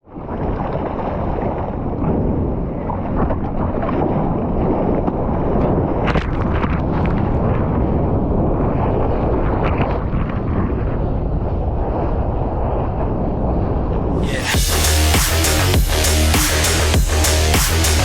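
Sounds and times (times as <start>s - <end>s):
wind buffeting microphone: 0.1s - 14.3s.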